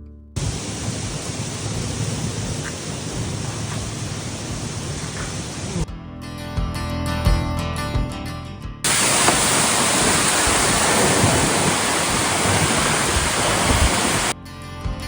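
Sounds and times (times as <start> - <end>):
waterfall rushing: 0.4 - 5.8, 8.9 - 14.4.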